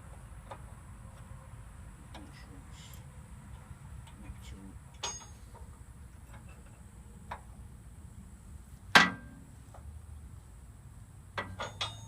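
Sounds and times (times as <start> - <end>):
metal tool clanking on metal: 5.0 - 6.8, 8.9 - 9.4, 11.4 - 12.0.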